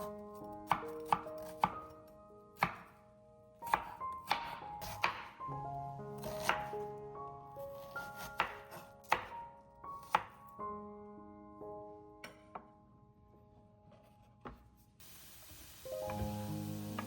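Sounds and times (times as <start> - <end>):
piano-like background music: 0.0 - 15.0, 15.6 - 17.0
knife chopping on cutting board: 0.7 - 1.8, 2.6 - 2.9, 3.7 - 5.4, 6.2 - 6.8, 7.7 - 9.4, 10.0 - 10.4.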